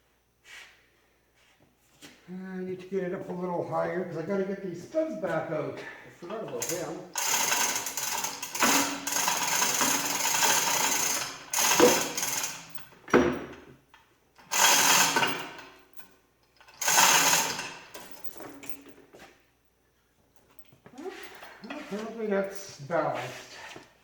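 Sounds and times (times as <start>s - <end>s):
hoist mechanical clatter: 6.2s - 13.6s, 14.4s - 15.7s, 16.6s - 18.9s.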